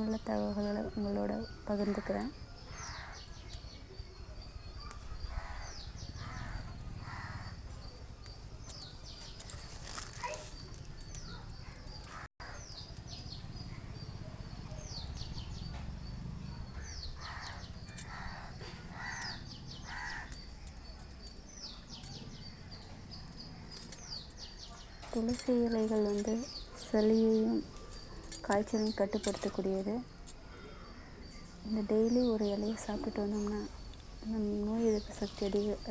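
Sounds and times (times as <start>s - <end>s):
birds chirping: 0.0s - 35.9s
lower rough bird calls: 4.7s - 25.1s.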